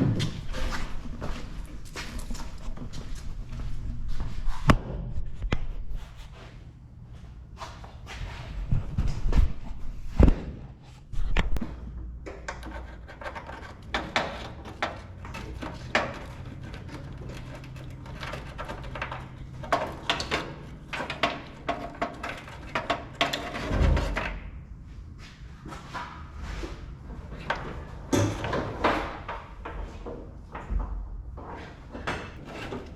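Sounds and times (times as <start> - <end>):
wires scraping against metal: 12.3 - 24.3, 32.2 - 32.9.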